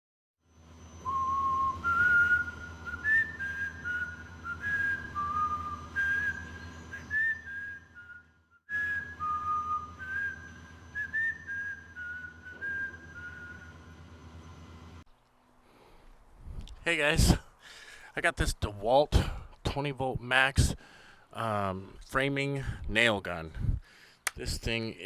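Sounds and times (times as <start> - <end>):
low hum: 0.5 - 16.8
person whistling a tune: 1.0 - 13.8.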